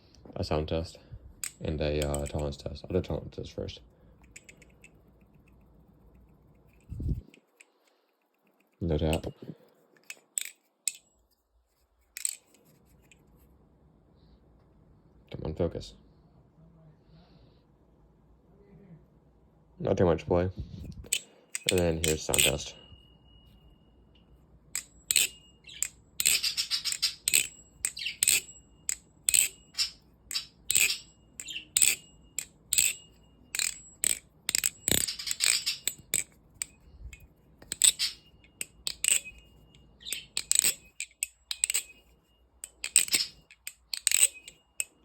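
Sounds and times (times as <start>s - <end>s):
metallic clacks of trainer knife: 1.4s - 2.6s, 4.2s - 9.4s, 10.0s - 11.2s, 12.1s - 13.2s, 21.0s - 22.9s, 24.8s - 45.0s.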